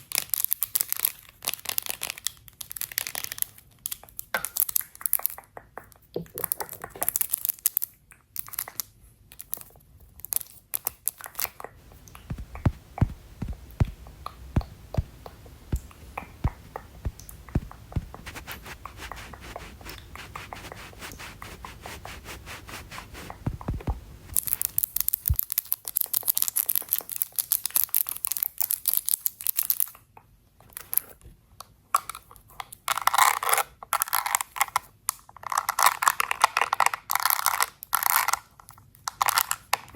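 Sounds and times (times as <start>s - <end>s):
rustling: 11.8s - 25.4s
scratchy brushing strokes: 11.8s - 25.4s
sharp taps and clicks: 11.8s - 25.4s.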